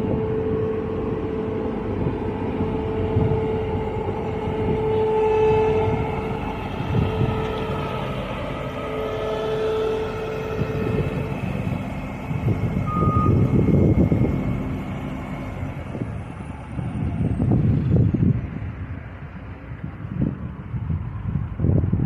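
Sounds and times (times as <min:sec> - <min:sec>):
reversing alarm tone: 0:00.0 - 0:17.1
road roller engine running: 0:00.0 - 0:22.0
short high beep: 0:12.8 - 0:13.5.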